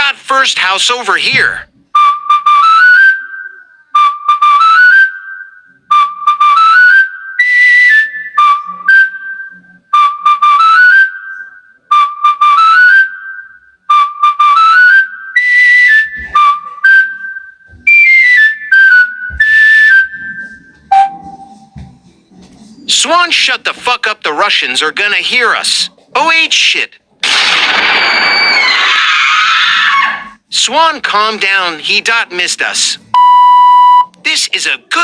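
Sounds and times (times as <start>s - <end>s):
high breathy whistle tune: 3.1s - 21.7s.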